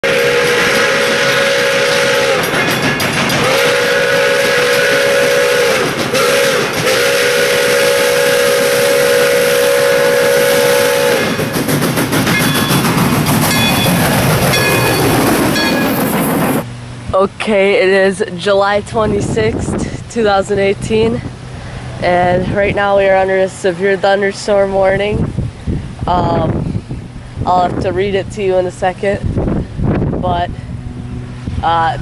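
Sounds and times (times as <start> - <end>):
train horn blasts: 0.0 - 11.6
steady rushing noise: 0.0 - 17.8, 18.7 - 32.0.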